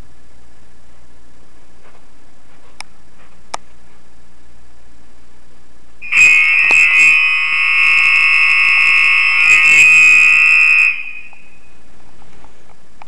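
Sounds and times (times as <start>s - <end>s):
fire alarm horn blast: 6.0s - 11.7s.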